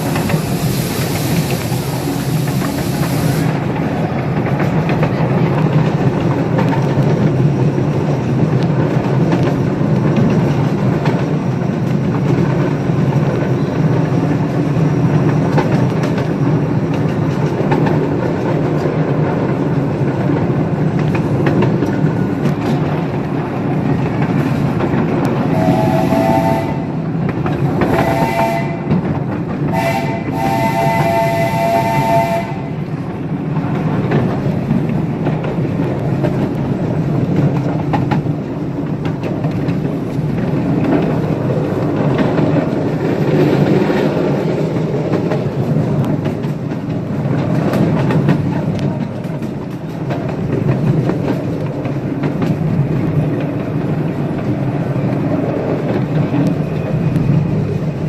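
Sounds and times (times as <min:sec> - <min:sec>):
train rumbling: 0:00.0 - 0:58.0
wheels clicking over rail joints: 0:00.0 - 0:58.0
steam locomotive chime whistle: 0:25.5 - 0:27.0, 0:27.9 - 0:28.9, 0:29.7 - 0:32.9.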